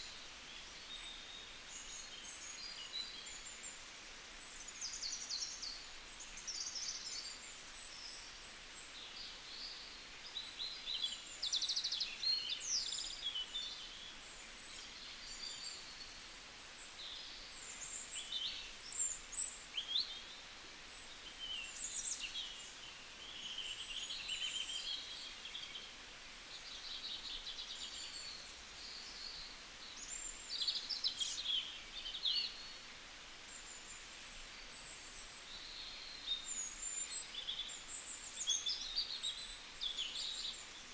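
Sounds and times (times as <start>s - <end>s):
faint steady hiss: 0.0s - 40.9s
small birds singing and chirping: 0.0s - 40.9s.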